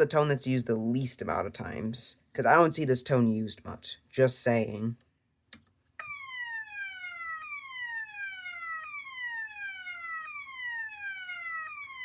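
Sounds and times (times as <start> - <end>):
fire alarm swept tone: 6.0 - 12.0.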